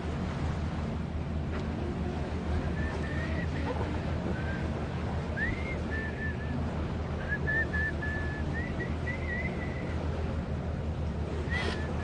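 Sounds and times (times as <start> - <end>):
boat engine hum: 0.0 - 12.0
wind: 0.0 - 12.0
whistled tune: 5.3 - 6.6, 7.2 - 10.0.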